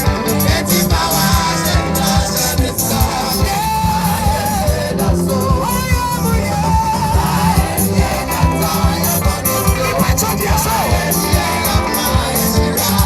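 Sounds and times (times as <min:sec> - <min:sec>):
band with driving beat: 0:00.0 - 0:13.0.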